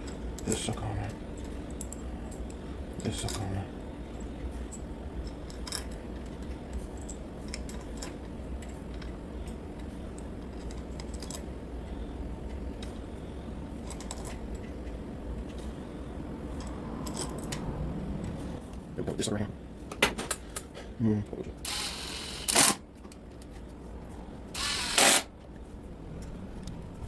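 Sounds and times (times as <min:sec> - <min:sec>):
low hum: 0:21.5 - 0:27.0.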